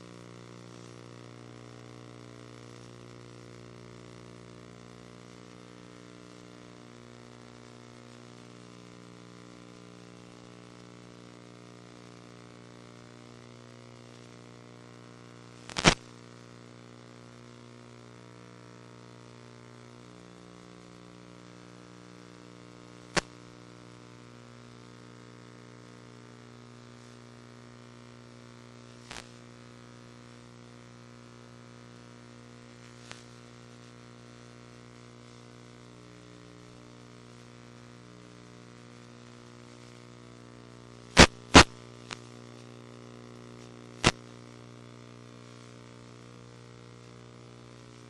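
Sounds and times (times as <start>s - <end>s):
steady electrical hum: 0.0s - 48.0s
sharp clicks: 15.7s - 16.0s, 41.2s - 42.2s.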